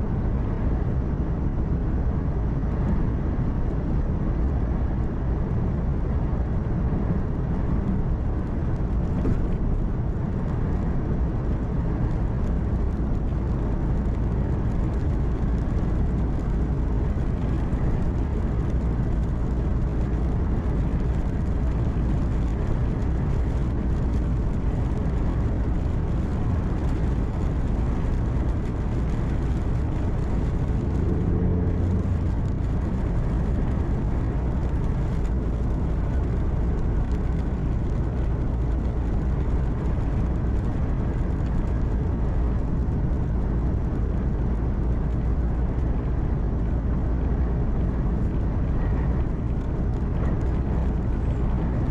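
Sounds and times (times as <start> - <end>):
road noise: 0.0 - 51.9
truck engine hum: 0.0 - 51.9.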